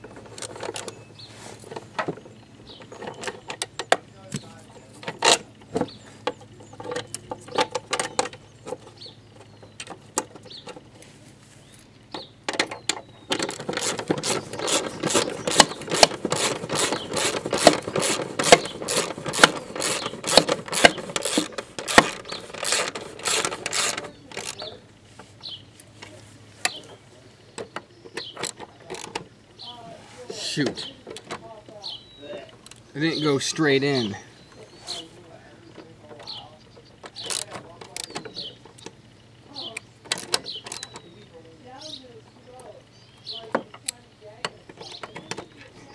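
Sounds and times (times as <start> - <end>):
hand ratchet clicking: 12.5 - 24.7, 37.0 - 38.2.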